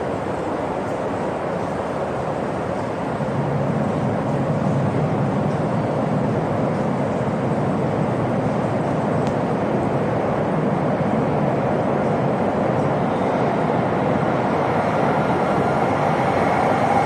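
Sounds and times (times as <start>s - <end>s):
train rushing rumble: 0.0s - 17.0s.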